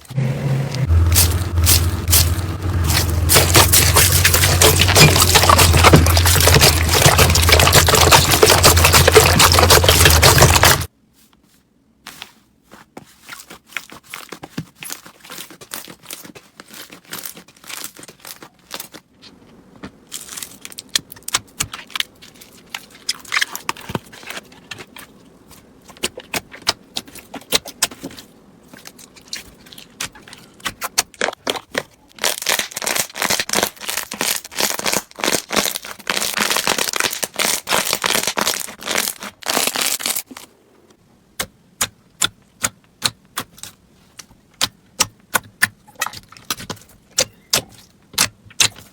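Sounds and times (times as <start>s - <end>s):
slime crackling and popping: 0.9s - 10.9s, 30.6s - 40.4s.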